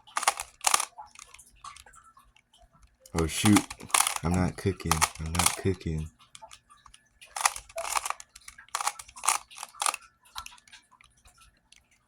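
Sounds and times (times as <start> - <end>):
puzzle cube clicking: 0.0 - 1.3, 3.2 - 6.6, 7.4 - 10.7.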